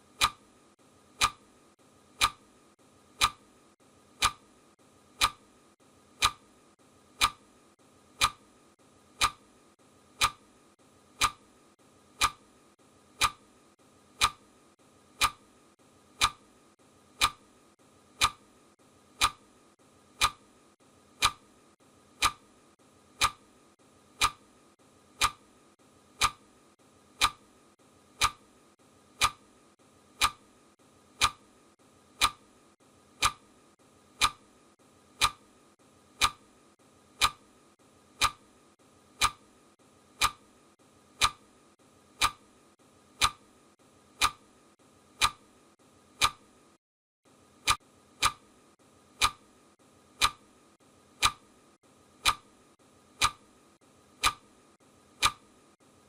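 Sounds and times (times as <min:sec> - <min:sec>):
clock ticking: 0:00.0 - 0:00.5, 0:01.1 - 0:01.5, 0:02.1 - 0:02.5, 0:03.1 - 0:03.5, 0:04.2 - 0:04.5, 0:05.1 - 0:05.5, 0:06.1 - 0:06.5, 0:07.1 - 0:07.5, 0:08.1 - 0:08.5, 0:09.1 - 0:09.5, 0:10.1 - 0:10.5, 0:11.2 - 0:11.5, 0:12.1 - 0:12.5, 0:13.1 - 0:13.5, 0:14.1 - 0:14.5, 0:15.1 - 0:15.5, 0:16.1 - 0:16.5, 0:17.1 - 0:17.5, 0:18.1 - 0:18.5, 0:19.1 - 0:19.5, 0:20.1 - 0:20.5, 0:21.2 - 0:21.5, 0:22.2 - 0:22.5, 0:23.2 - 0:23.5, 0:24.1 - 0:24.5, 0:25.1 - 0:25.5, 0:26.1 - 0:26.5, 0:27.1 - 0:27.5, 0:28.1 - 0:28.5, 0:29.1 - 0:29.5, 0:30.1 - 0:30.5, 0:31.2 - 0:31.5, 0:32.2 - 0:32.5, 0:33.2 - 0:33.5, 0:34.2 - 0:34.5, 0:35.2 - 0:35.5, 0:36.2 - 0:36.5, 0:37.2 - 0:37.5, 0:38.2 - 0:38.5, 0:39.1 - 0:39.5, 0:40.1 - 0:40.5, 0:41.1 - 0:41.5, 0:42.2 - 0:42.5, 0:43.2 - 0:43.5, 0:44.2 - 0:44.5, 0:45.2 - 0:45.5, 0:46.2 - 0:46.5, 0:47.6 - 0:48.4, 0:49.2 - 0:49.5, 0:50.2 - 0:50.5, 0:51.2 - 0:51.5, 0:52.2 - 0:52.5, 0:53.2 - 0:53.4, 0:54.2 - 0:54.5, 0:55.2 - 0:55.4.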